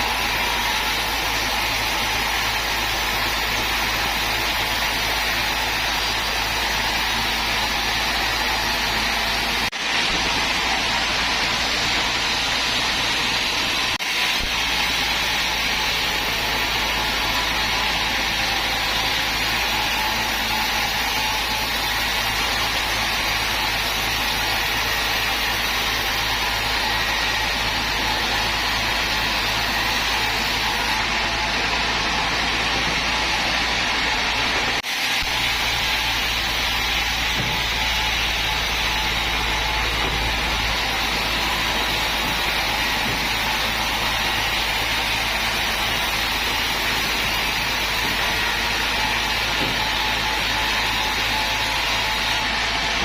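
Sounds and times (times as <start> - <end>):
sawmill machinery running: 0.0 - 53.0.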